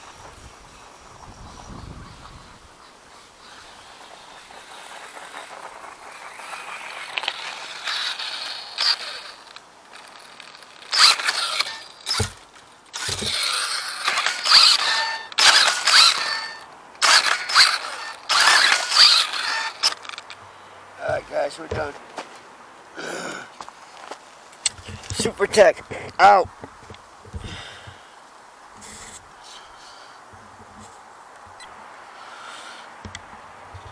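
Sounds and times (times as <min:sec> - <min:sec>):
rc truck motor whirring: 0:03.4 - 0:20.4, 0:28.8 - 0:29.6.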